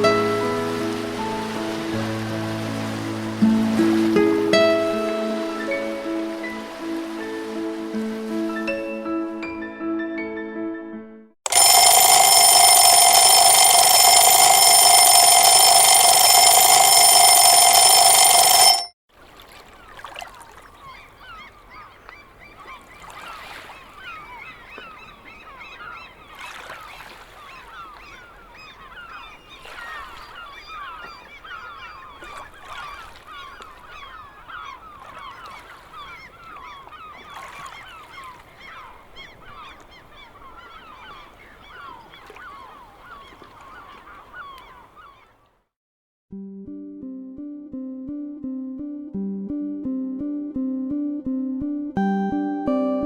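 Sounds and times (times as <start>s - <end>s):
buzzing ringtone: 11.5s - 19.0s.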